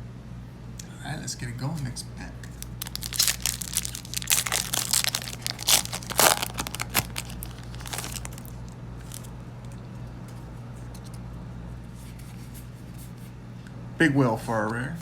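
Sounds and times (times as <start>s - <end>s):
soft rustling and handling: 1.7s - 13.4s
foil wrapper tearing and crinkling: 2.5s - 9.3s.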